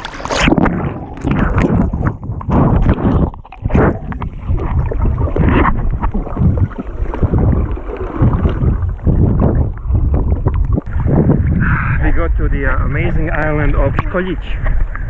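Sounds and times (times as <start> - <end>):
sea water splashing: 0.0 - 11.6
wind buffeting microphone: 0.0 - 15.0.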